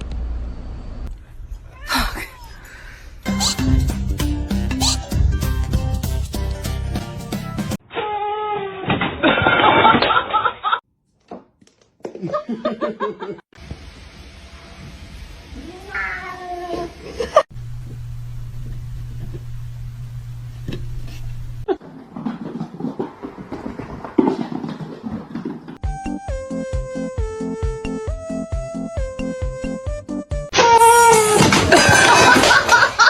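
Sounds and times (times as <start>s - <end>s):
cats meowing: 1.6s - 2.7s, 15.6s - 17.0s.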